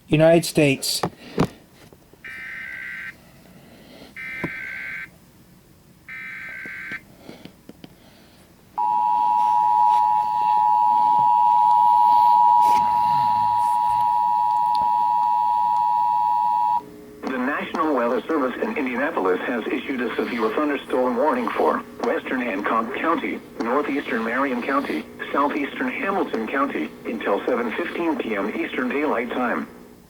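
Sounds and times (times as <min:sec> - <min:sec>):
two-tone attention signal: 0:08.8 - 0:16.8.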